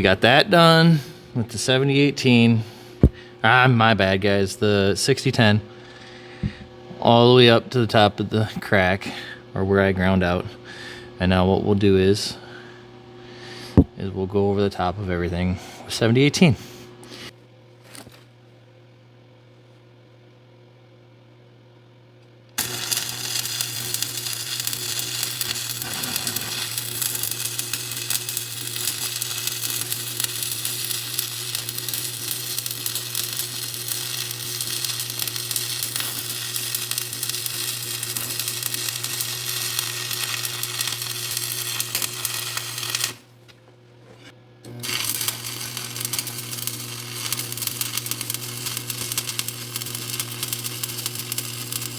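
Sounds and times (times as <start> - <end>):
welding arc crackle and sizzle: 22.6 - 43.3, 44.7 - 51.9.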